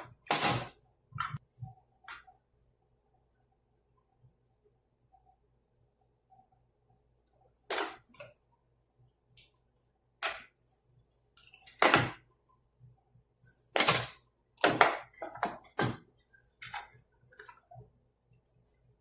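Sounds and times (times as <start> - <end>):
faint steady hum: 0.0 - 19.0.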